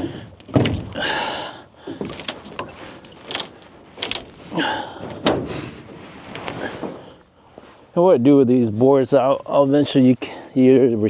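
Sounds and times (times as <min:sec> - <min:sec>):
wooden boards knocking and clattering: 0:00.0 - 0:01.1, 0:05.0 - 0:05.6
wood creaking: 0:00.0 - 0:07.9.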